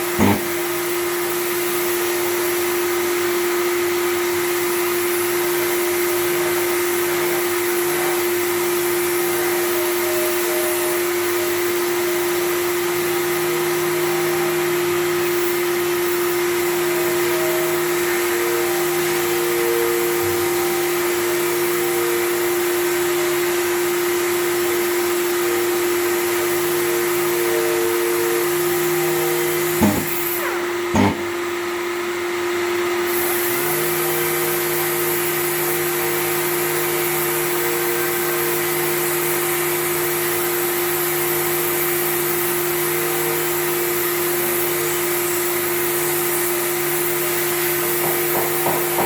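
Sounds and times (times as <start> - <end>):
power sander running: 0.0 - 1.1, 28.7 - 31.6.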